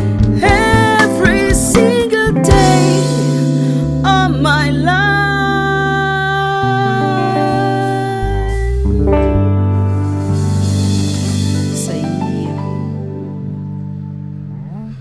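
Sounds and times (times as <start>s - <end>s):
bending lead melody: 0.0s - 15.0s
guitar: 0.0s - 15.0s
steady bass line: 0.0s - 15.0s.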